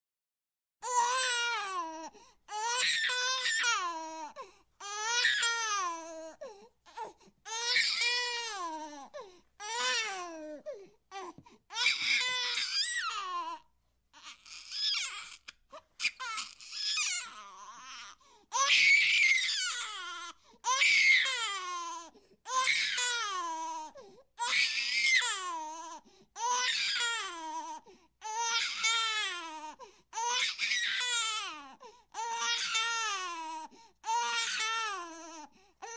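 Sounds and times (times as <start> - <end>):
baby-like crying wails: 0.8 - 35.9.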